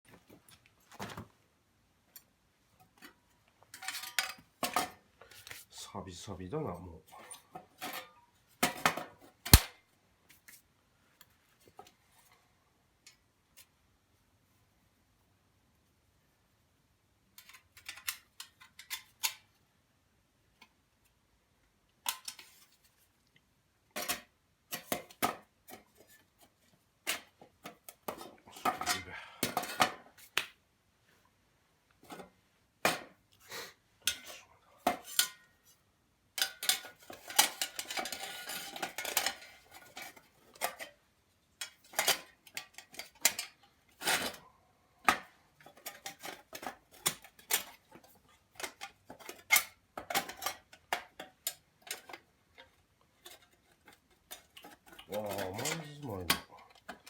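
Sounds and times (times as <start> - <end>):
metal utensils clinking on frying pan: 34.1 - 35.4.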